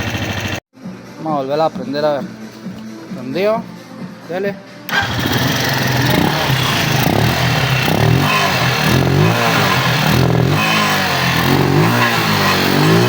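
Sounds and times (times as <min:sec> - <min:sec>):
motorcycle engine revving: 0:00.0 - 0:00.6, 0:04.9 - 0:13.0.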